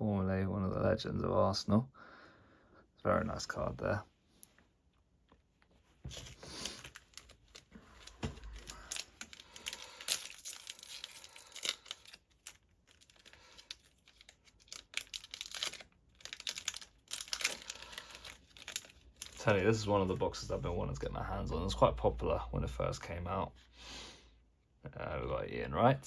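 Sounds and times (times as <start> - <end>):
cards rustling and clicking: 5.6 - 20.5
foil wrapper crinkling and tearing: 6.1 - 20.6.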